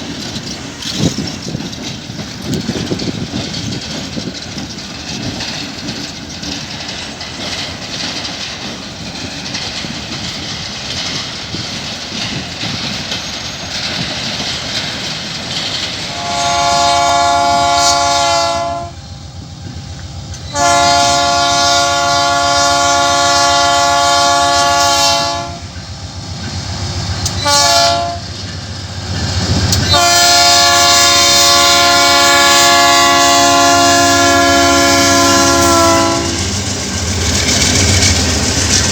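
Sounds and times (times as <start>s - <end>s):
train rumbling past: 0.0s - 38.9s
locomotive air horn blasts: 16.1s - 19.0s, 20.5s - 25.7s, 27.4s - 28.3s, 29.9s - 36.5s.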